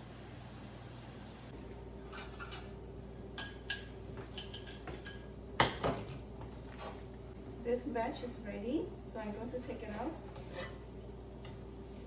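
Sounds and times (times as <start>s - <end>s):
metal spoon clinking on pan: 3.4s - 5.3s.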